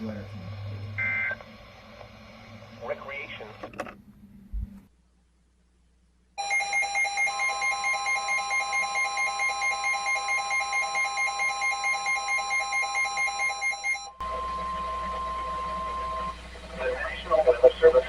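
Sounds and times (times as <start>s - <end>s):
steady warning alarm tone: 0.0s - 1.6s, 6.4s - 18.0s
alarm beeping rapidly: 6.4s - 16.4s.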